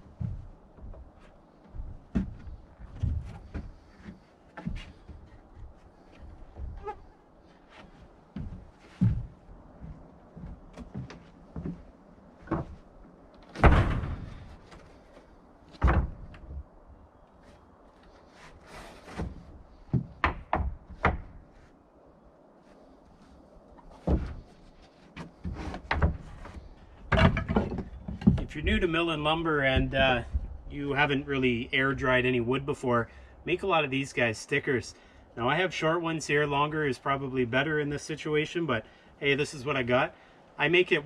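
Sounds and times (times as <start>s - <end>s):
wooden boards knocking and thudding: 1.7s - 5.7s, 13.5s - 16.6s, 18.7s - 21.5s, 23.9s - 28.9s.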